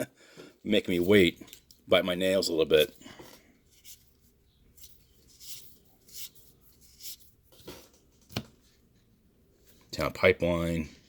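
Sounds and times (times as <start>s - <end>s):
cards swishing against cards: 4.8s - 8.5s.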